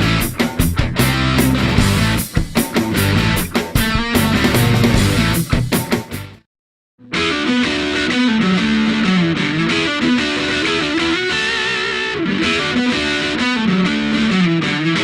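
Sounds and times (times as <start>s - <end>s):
distorted electric guitar riff: 0.0s - 6.4s, 7.0s - 15.0s.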